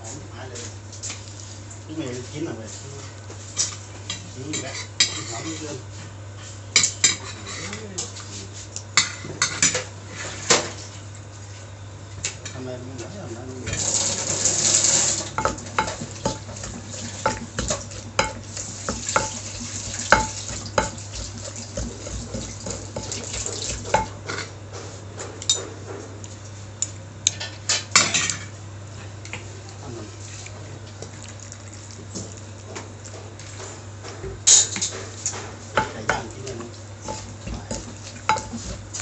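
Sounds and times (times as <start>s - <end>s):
utensil stirring in metal pot: 13.7s - 24.2s, 35.8s - 39.0s
utensil clinking against pot: 15.0s - 24.5s.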